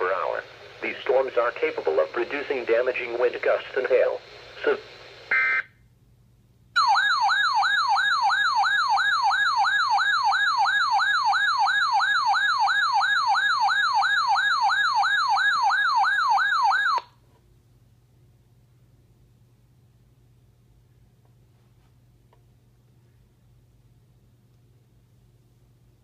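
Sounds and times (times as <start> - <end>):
warbling electronic siren tone: 6.8 - 17.0.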